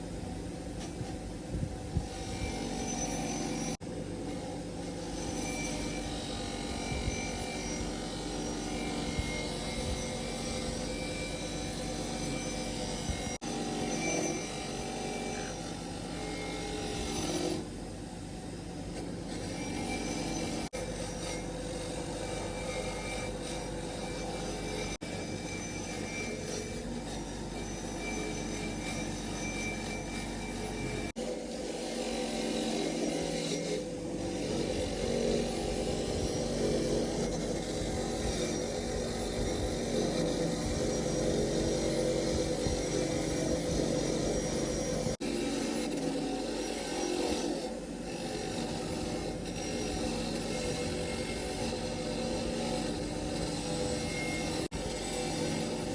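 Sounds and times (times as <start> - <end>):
machine hum: 0.0 - 55.9
metal grinding: 0.7 - 55.9
tool rasping metal: 1.9 - 55.9.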